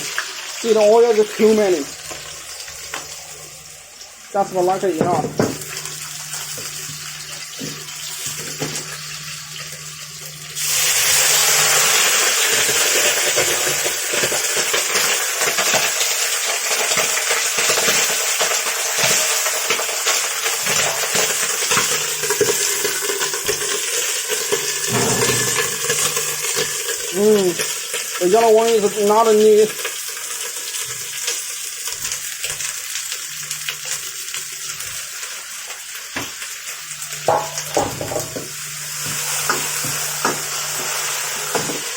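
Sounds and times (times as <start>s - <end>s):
kitchen fan hum: 0.0s - 41.9s
meat sizzling in oil: 0.0s - 41.9s
knocks: 24.9s - 25.8s.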